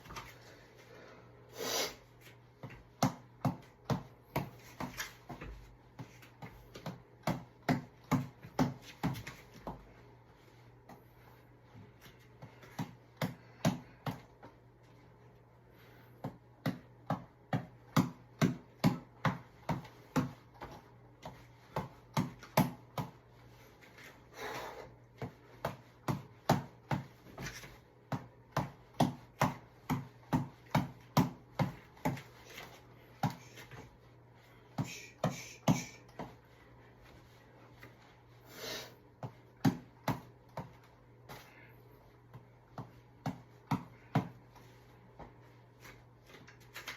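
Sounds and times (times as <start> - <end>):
reflex ball being punched: 2.5 - 9.9, 12.4 - 14.5, 16.2 - 23.4, 24.9 - 33.9, 39.2 - 41.4, 42.2 - 45.4.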